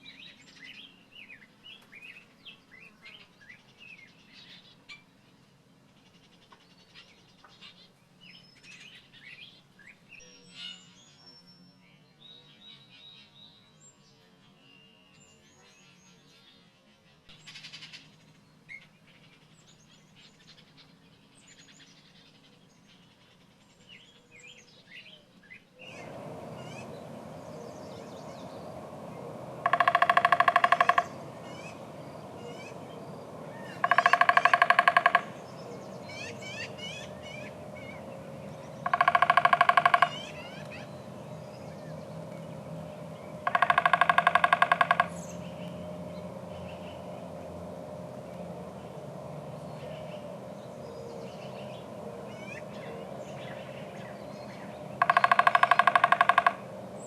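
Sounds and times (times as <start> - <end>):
birds chirping: 17.3 - 57.0
steady background hum: 17.3 - 57.0
loud rapid bird rattle: 25.9 - 32.8, 33.5 - 40.9, 43.3 - 45.6, 54.6 - 57.0.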